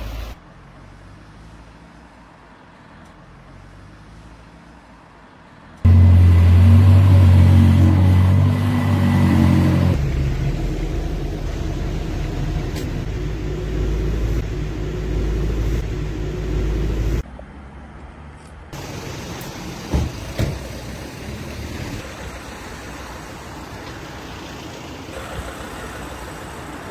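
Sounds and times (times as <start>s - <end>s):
vehicle engine running: 5.9s - 17.2s, 18.8s - 26.9s.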